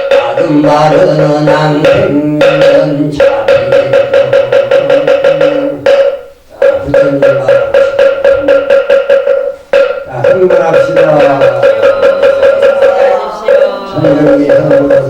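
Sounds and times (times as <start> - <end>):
person chanting: 0.0 - 5.9, 6.5 - 8.6, 10.1 - 15.0
wooden fish struck fast: 1.8 - 13.1.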